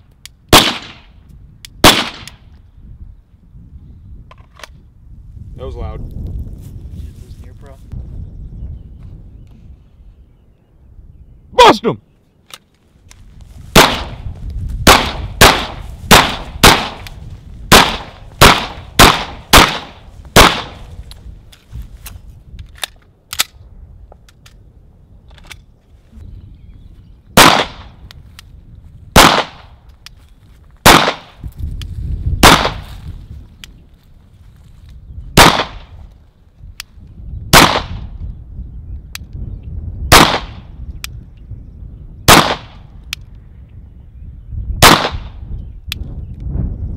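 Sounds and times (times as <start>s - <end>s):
pistol shots: 0.5s - 1.1s, 1.8s - 2.4s, 13.7s - 14.2s, 14.8s - 17.1s, 17.7s - 20.9s, 27.4s - 28.0s, 29.1s - 29.8s, 30.8s - 31.4s, 32.4s - 32.8s, 35.4s - 35.9s, 37.5s - 38.1s, 40.1s - 40.6s, 42.3s - 42.8s, 44.8s - 45.4s.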